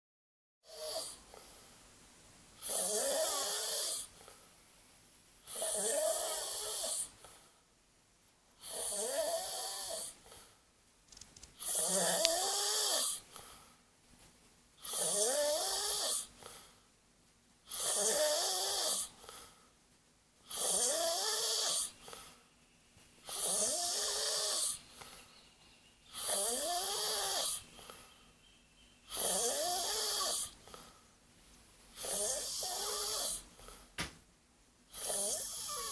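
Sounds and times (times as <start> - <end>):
pet snoring: 0.6 - 1.6, 2.6 - 4.4, 5.4 - 7.4, 8.6 - 10.5, 11.6 - 13.5, 14.8 - 16.7, 17.7 - 19.5, 20.4 - 22.4, 23.2 - 25.2, 26.1 - 28.1, 29.1 - 31.0, 32.0 - 33.9, 34.9 - 35.9.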